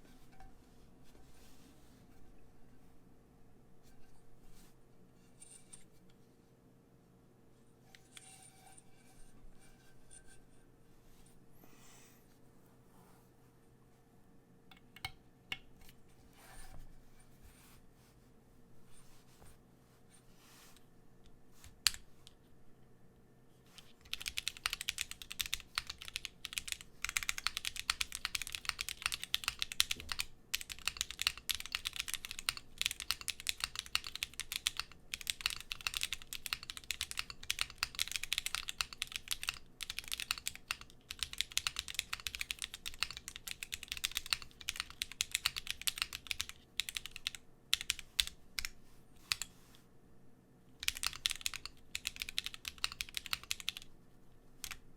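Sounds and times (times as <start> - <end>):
mechanical keyboard typing: 23.8 - 49.5, 50.8 - 53.9, 54.6 - 54.8.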